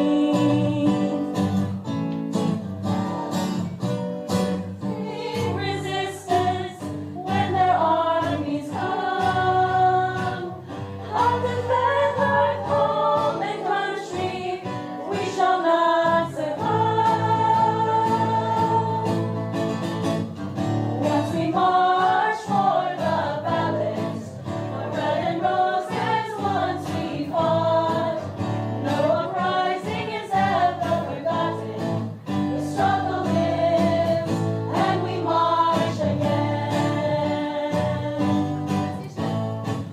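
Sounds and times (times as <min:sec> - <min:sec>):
strummed acoustic guitar: 0:00.0 - 0:39.9
group singing a hymn: 0:04.8 - 0:19.4, 0:20.9 - 0:38.8.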